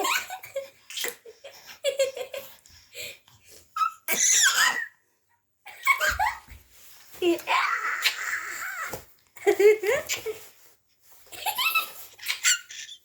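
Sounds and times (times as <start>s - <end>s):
baby squealing with laughter: 3.8s - 5.0s, 11.6s - 13.0s
baby giggling: 11.4s - 13.0s.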